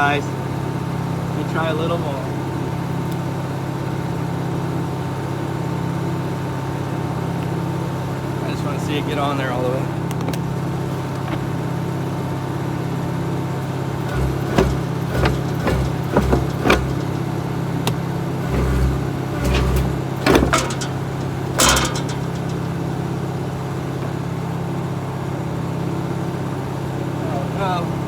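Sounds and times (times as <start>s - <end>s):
diesel engine running: 13.4s - 24.8s
metal clanks: 13.9s - 24.3s
low thumps: 14.0s - 17.7s, 18.4s - 23.3s.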